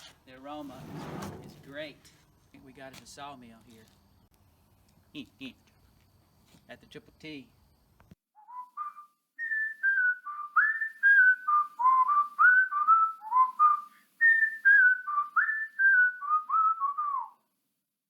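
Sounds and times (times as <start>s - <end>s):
person whistling a tune: 8.4s - 17.4s.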